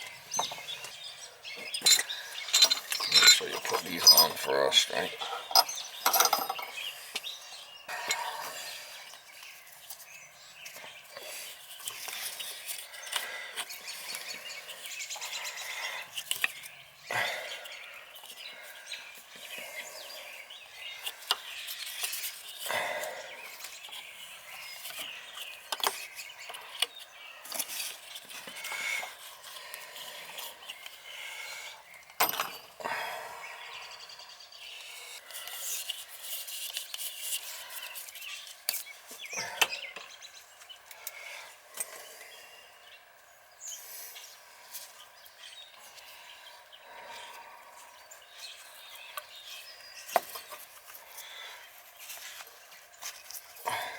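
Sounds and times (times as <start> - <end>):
metal fittings clinking and scraping: 1.7 - 6.8.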